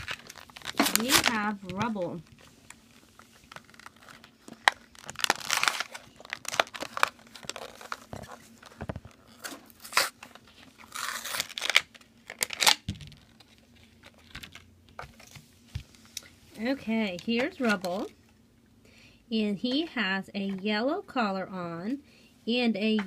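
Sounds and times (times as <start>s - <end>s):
packaging tearing and crinkling: 0.0s - 14.6s.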